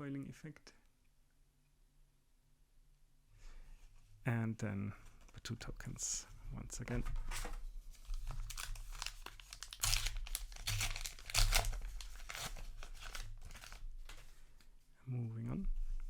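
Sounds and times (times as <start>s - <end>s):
paper wrapper crinkling and tearing: 8.0s - 14.4s.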